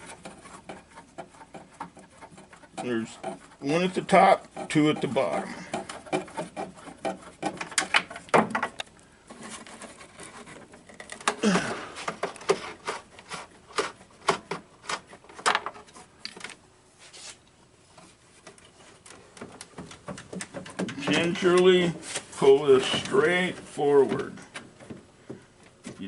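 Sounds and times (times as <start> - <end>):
short rubbing noises: 17.0 - 17.4.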